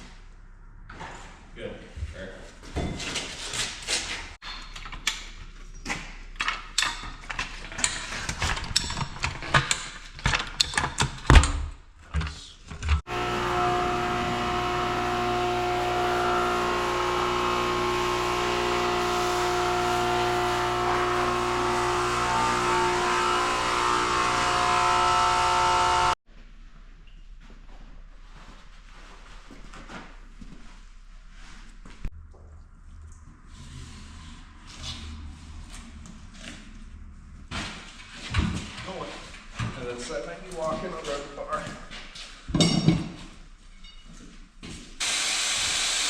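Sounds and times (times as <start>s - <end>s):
machine humming: 13.1s - 26.2s
knocks and clattering on equipment: 41.8s - 44.1s.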